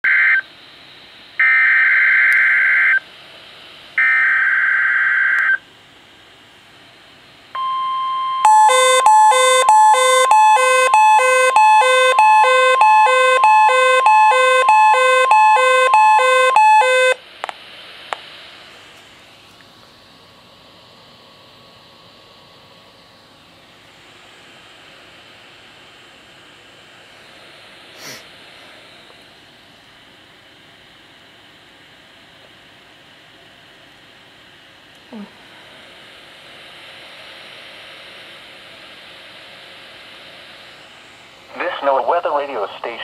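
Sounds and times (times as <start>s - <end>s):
rapid electronic alarm beeps: 7.6s - 17.2s
steady alert tone: 7.6s - 17.2s
radio hiss: 41.5s - 43.0s.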